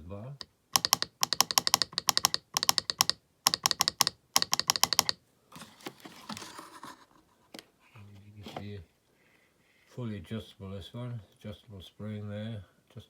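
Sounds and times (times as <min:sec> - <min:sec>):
morse key clicking: 0:00.4 - 0:05.2
rustling handling noise: 0:05.5 - 0:09.0.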